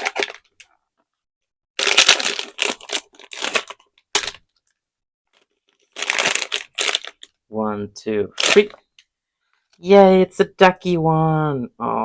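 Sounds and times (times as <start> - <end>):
packaging rustling and crinkling: 0.0 - 0.8, 1.8 - 7.4, 8.4 - 8.8.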